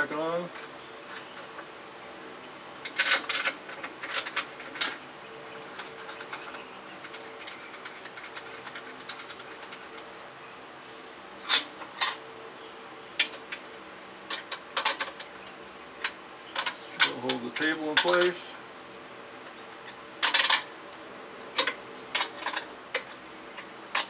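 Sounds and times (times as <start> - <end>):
clamps clicking and knocking: 21.6 - 24.0.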